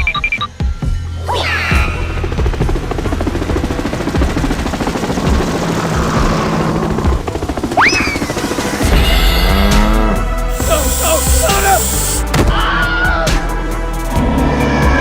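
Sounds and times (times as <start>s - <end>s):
brief sliding tone: 10.5s - 12.2s.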